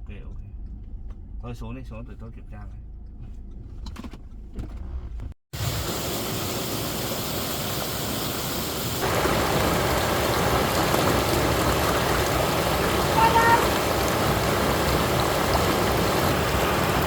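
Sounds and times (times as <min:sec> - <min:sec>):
steady rushing noise: 0:08.7 - 0:17.0.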